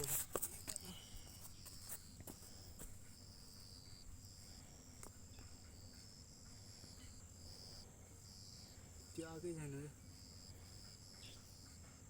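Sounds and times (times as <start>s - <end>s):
insect chirping: 0.0s - 12.0s.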